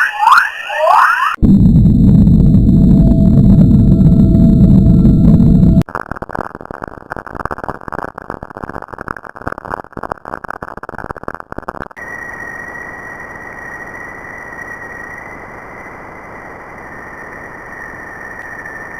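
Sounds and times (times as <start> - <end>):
crackling fluttering noise: 1.3 - 18.9
thin high whistle: 16.7 - 18.9.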